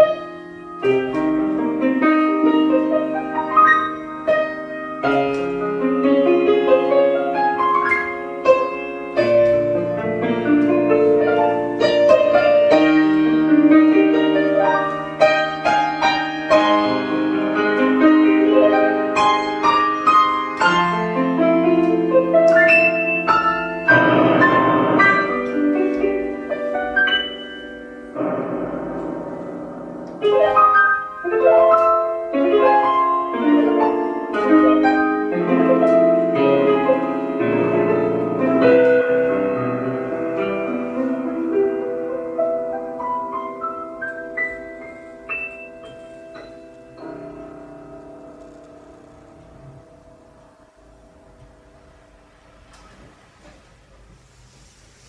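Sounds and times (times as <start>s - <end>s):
slow piano piece: 0.0s - 55.0s.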